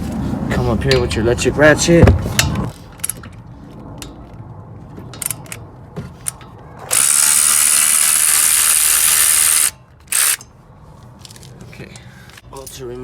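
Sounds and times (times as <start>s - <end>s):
ratchet clicks: 6.3s - 10.5s
electric ratchet motor running: 6.9s - 10.4s.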